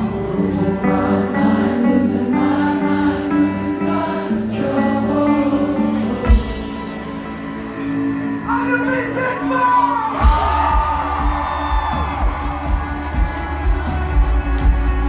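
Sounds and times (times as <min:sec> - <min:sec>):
rock band playing live: 0:00.0 - 0:15.0.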